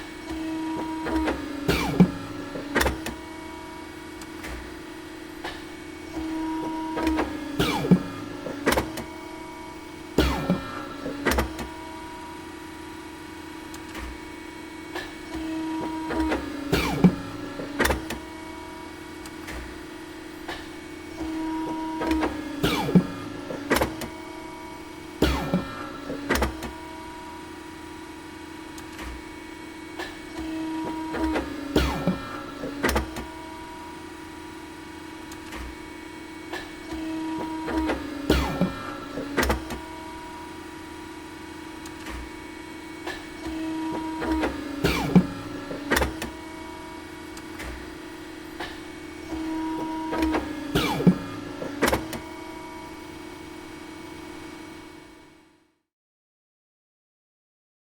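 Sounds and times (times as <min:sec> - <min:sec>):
cutting machine humming: 0:00.0 - 0:55.2
sharp clicks and knocks: 0:05.4 - 0:09.2, 0:10.2 - 0:11.8, 0:15.0 - 0:18.3, 0:20.5 - 0:24.2, 0:25.2 - 0:26.8, 0:30.0 - 0:33.4, 0:36.5 - 0:40.0, 0:43.0 - 0:46.4, 0:48.6 - 0:52.3.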